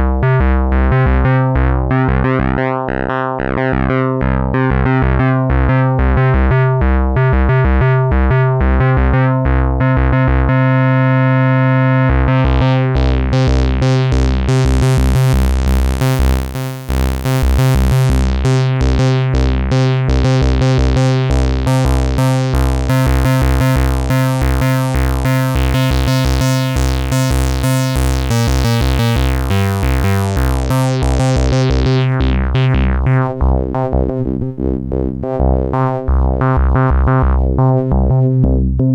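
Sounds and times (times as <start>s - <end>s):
synthesizer repeating note pattern: 0.0s - 38.9s.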